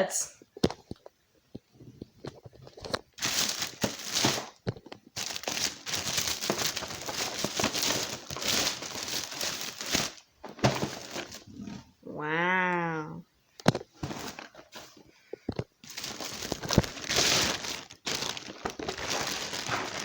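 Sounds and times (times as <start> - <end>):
packaging crinkling and rustling: 0.6 - 11.5, 13.6 - 20.0.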